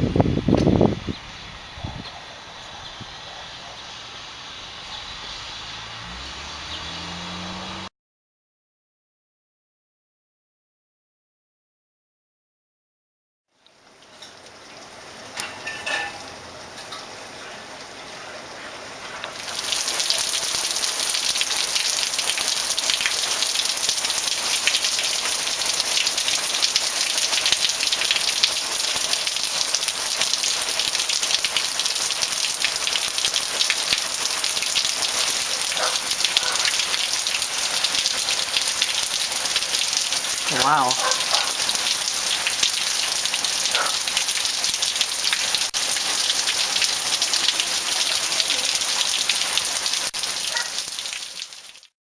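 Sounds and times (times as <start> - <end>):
heavy rain pattering: 13.7 - 51.9.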